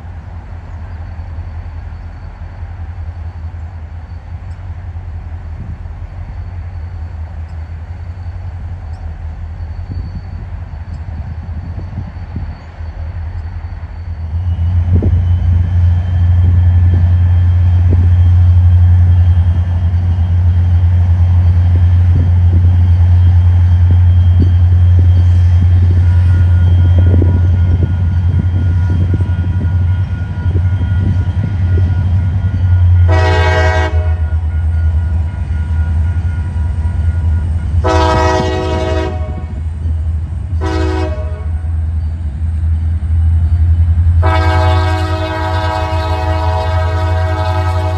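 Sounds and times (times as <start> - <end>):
diesel locomotive running: 0.0 - 47.9
train air horn blasts: 25.9 - 39.6, 40.5 - 41.8, 44.2 - 47.9.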